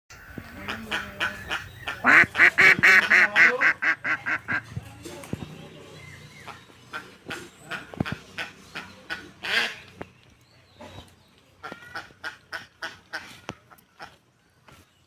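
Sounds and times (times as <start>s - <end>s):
duck quacking: 0.5s - 4.6s, 6.5s - 9.8s, 11.7s - 13.4s.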